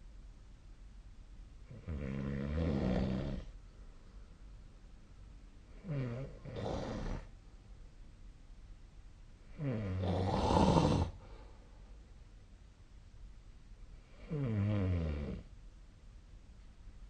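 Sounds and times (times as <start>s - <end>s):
person snoring: 1.7s - 3.5s, 5.8s - 7.3s, 9.6s - 11.2s, 14.2s - 15.5s.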